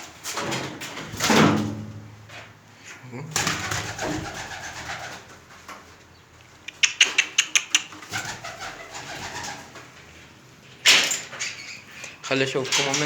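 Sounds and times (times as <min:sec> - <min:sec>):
pigeons cooing: 0:02.9 - 0:10.2.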